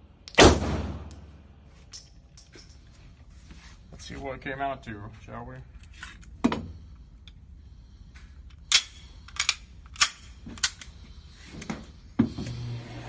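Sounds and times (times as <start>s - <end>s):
low hum: 0.0s - 4.0s
gunshots: 0.4s - 1.1s.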